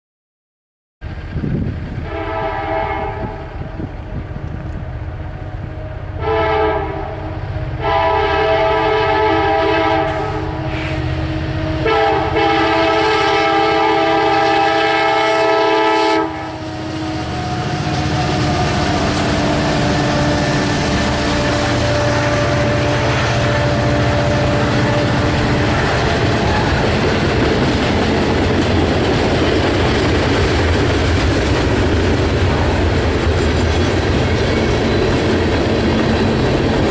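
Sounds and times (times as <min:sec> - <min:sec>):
locomotive engine rumble: 0:01.0 - 0:36.9
train air horn blasts: 0:02.0 - 0:27.6
wheels clattering on rails: 0:17.2 - 0:36.9.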